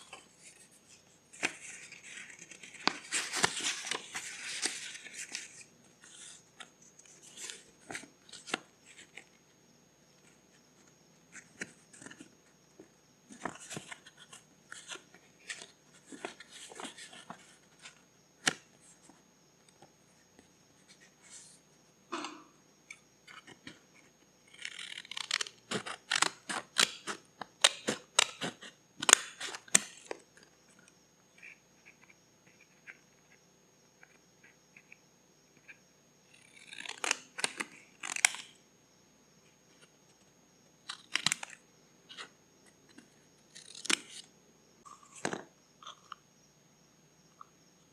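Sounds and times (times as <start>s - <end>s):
paper rustling: 0.0s - 9.2s.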